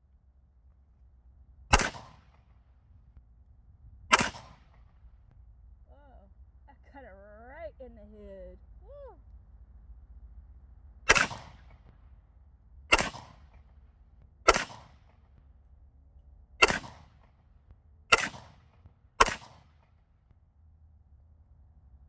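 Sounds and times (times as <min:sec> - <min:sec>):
gunshots with echo: 0:01.7 - 0:02.3, 0:04.1 - 0:04.8, 0:11.1 - 0:11.9, 0:12.9 - 0:13.7, 0:14.5 - 0:15.1, 0:16.6 - 0:17.1, 0:18.1 - 0:18.6, 0:19.2 - 0:19.8.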